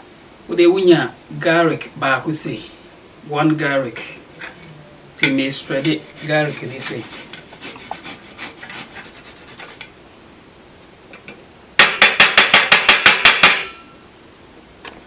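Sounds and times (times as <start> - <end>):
garlic being grated: 5.2 - 9.9.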